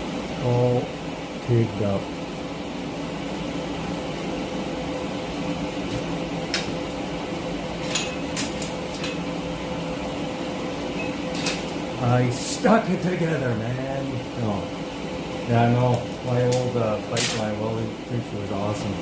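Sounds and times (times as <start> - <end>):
machine hum: 0.0 - 19.0.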